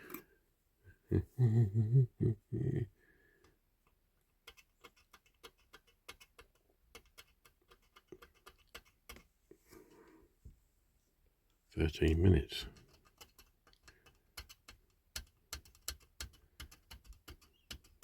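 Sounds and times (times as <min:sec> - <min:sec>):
small hand tools clicking: 0:12.7 - 0:18.0.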